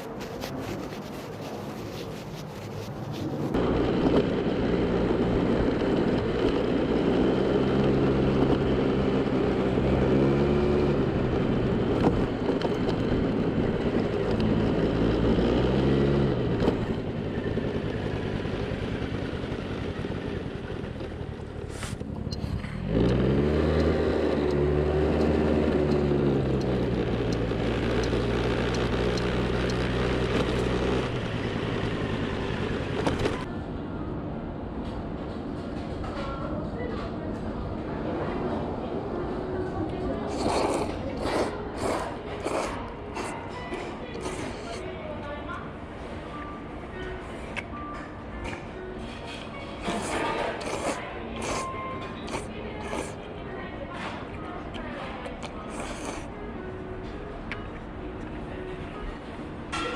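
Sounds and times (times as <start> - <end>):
scooter engine revving and idling: 3.5 - 33.5.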